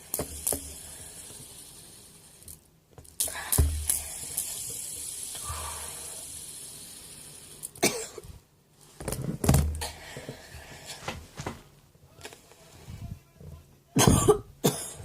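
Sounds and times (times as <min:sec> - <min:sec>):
fidget spinner whirring: 0:00.0 - 0:07.8.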